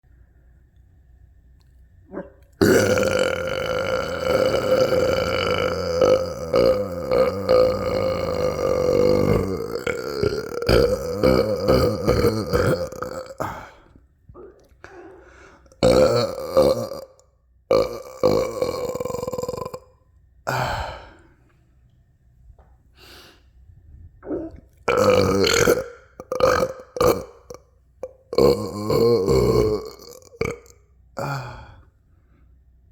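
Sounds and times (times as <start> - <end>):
man belching: 2.1 - 13.8, 15.7 - 19.8, 24.2 - 31.8.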